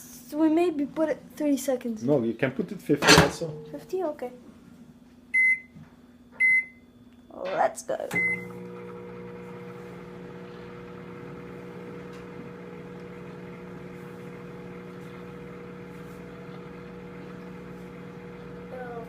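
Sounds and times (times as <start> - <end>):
microwave oven humming: 5.1 - 19.0.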